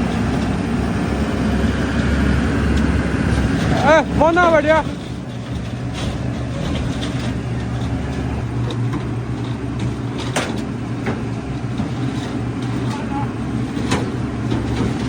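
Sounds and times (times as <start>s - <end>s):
excavator diesel engine running: 0.0s - 15.0s.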